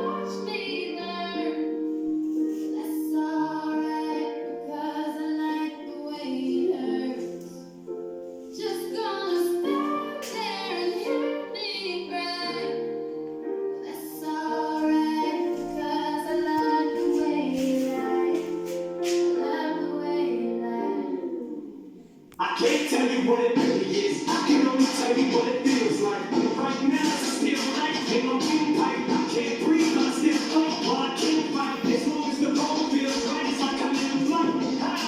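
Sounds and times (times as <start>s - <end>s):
song with high singing voice: 0.0s - 35.0s.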